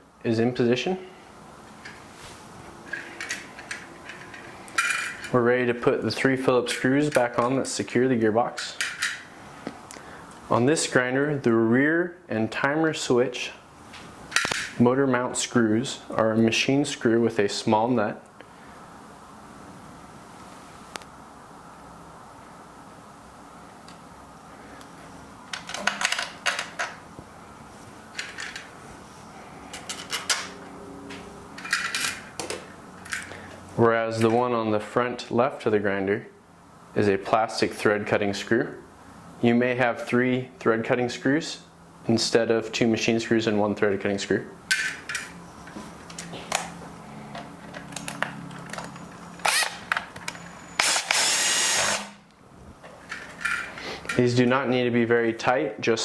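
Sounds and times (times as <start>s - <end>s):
screws and parts clicking: 47.7s - 52.1s
power drill: 49.4s - 49.8s, 50.8s - 52.2s.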